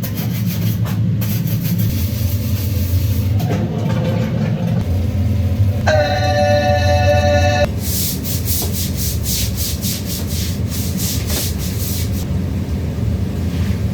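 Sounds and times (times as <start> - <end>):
low hum: 1.9 - 8.5
chord of ringing tones: 5.8 - 7.7.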